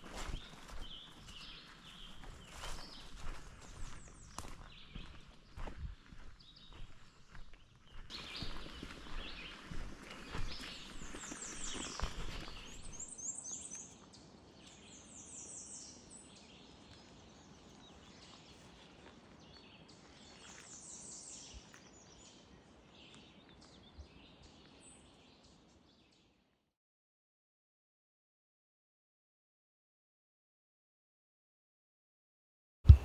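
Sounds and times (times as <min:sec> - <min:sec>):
faint outdoor ambience: 0:00.0 - 0:26.0
songbird singing: 0:00.0 - 0:26.5
footsteps in leaf litter: 0:08.1 - 0:13.1.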